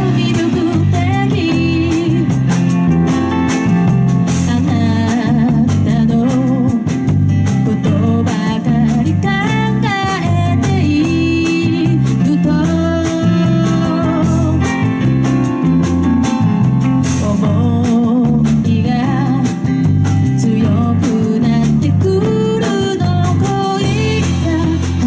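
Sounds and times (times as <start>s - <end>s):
person singing lead melody: 0.0s - 2.4s, 7.6s - 15.0s, 17.1s - 19.8s, 20.4s - 25.0s
live band playing: 0.0s - 25.0s.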